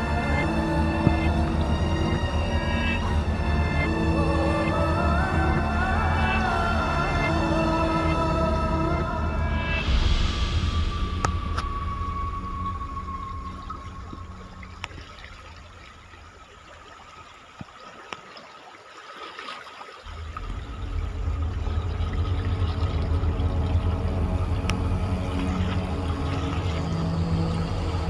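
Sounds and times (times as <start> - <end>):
low rumble: 0.0 - 16.8, 20.1 - 28.0
water running and trickling: 12.5 - 28.0.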